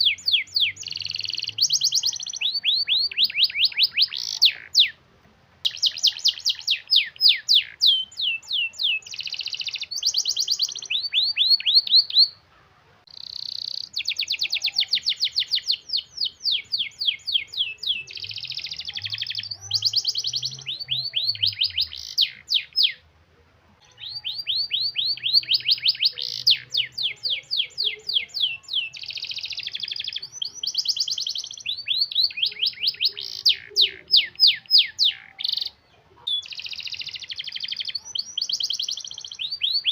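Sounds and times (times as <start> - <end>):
canary singing trills: 0.0 - 5.0, 5.6 - 23.1, 23.8 - 39.9.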